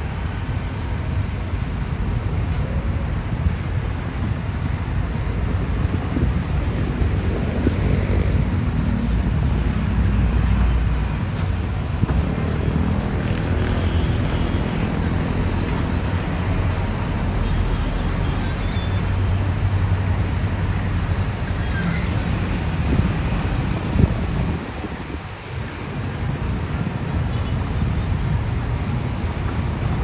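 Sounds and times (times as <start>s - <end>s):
heavy diesel engine droning: 5.4s - 22.8s.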